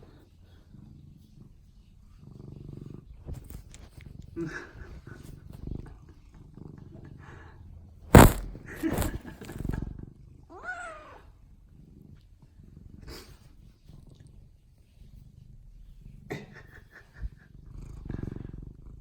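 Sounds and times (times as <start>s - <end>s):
cat purring: 0.6s - 5.8s, 17.3s - 19.0s
loud knock near microphone: 8.2s - 9.6s.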